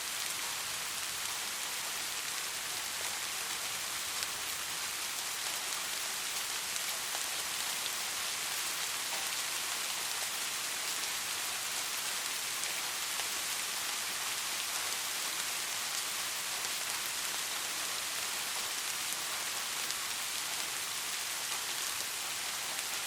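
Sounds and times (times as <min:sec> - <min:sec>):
steady rain hissing: 0:00.0 - 0:23.0.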